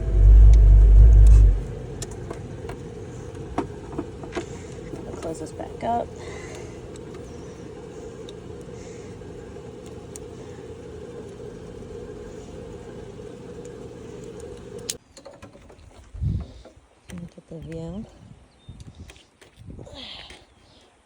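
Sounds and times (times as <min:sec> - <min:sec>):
pump motor humming: 0:00.0 - 0:15.0.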